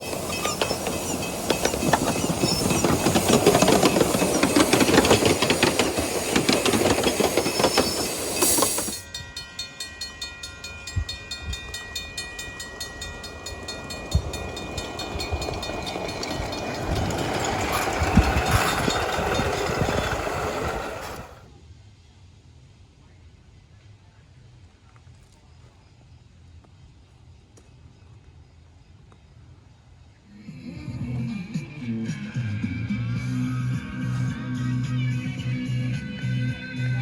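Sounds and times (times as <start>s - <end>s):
steam hiss: 0.0s - 9.1s, 13.7s - 21.4s
wheels clicking over track: 0.0s - 9.1s, 11.6s - 21.5s
miniature steam train running: 0.0s - 21.5s.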